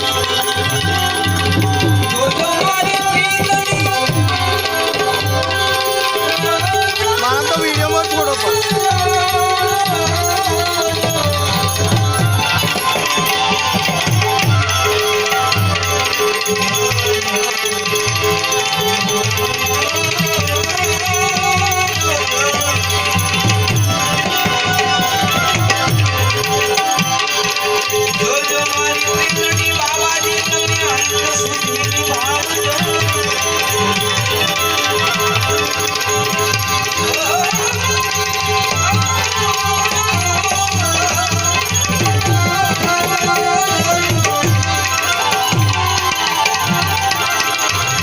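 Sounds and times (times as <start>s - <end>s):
rattling percussion: 0.0s - 48.0s
wavering string melody: 0.0s - 48.0s.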